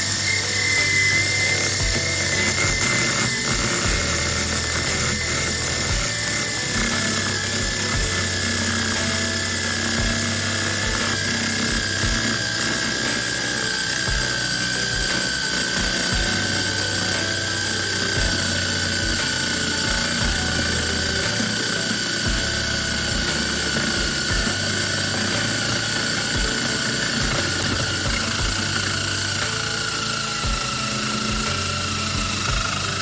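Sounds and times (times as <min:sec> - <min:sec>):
small power tool whining: 0:00.0 - 0:33.0.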